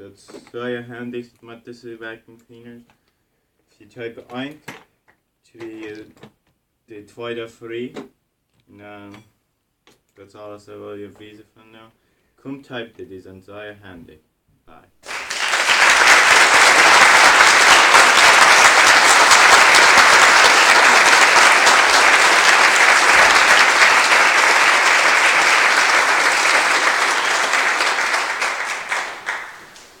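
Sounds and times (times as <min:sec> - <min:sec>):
crowd applauding: 0:15.0 - 0:30.0.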